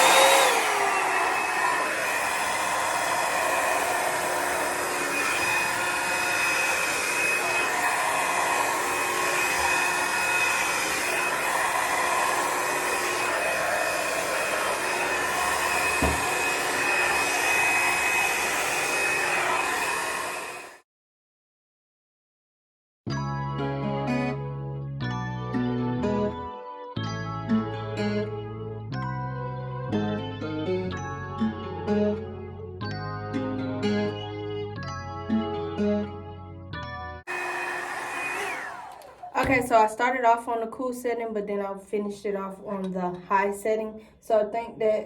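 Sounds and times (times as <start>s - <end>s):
hair dryer blowing air: 0.0s - 20.8s, 37.3s - 39.8s.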